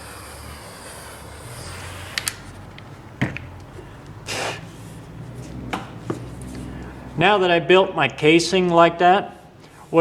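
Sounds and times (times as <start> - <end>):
handling clicks and knocks: 2.7 - 4.2.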